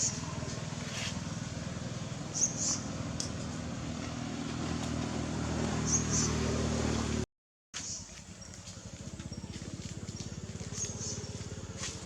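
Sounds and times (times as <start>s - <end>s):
small engine running: 7.8s - 12.0s.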